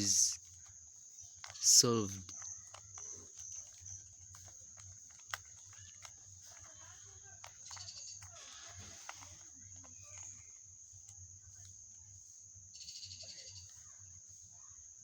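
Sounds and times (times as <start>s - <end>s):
puzzle cube clicking: 0.0s - 0.4s, 1.4s - 10.6s.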